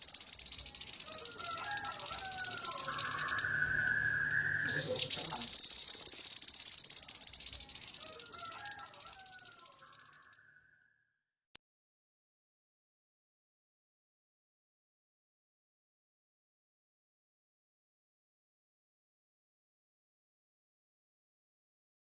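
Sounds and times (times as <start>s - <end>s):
insect buzzing: 0.0s - 10.3s
bird warbling: 0.0s - 10.8s.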